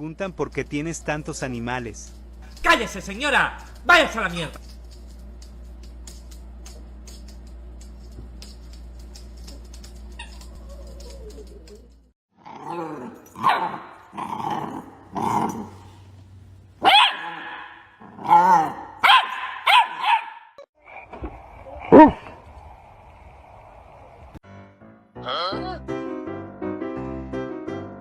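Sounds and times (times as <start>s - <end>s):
low hum with faint ticks: 0.0s - 12.1s
dog barking and growling: 10.2s - 16.0s, 16.8s - 20.6s, 21.6s - 22.4s.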